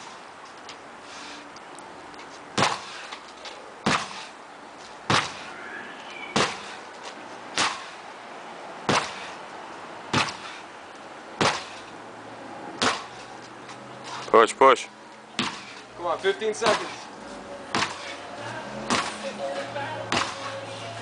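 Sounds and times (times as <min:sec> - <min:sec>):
sledgehammer strikes: 0:02.6 - 0:03.1, 0:03.8 - 0:04.3, 0:05.1 - 0:05.5, 0:06.3 - 0:06.8, 0:07.5 - 0:08.0, 0:08.8 - 0:09.4, 0:10.1 - 0:10.6, 0:11.4 - 0:11.9, 0:12.8 - 0:13.3, 0:15.4 - 0:15.8, 0:16.6 - 0:17.1, 0:17.7 - 0:18.2, 0:18.9 - 0:19.3, 0:20.1 - 0:20.6.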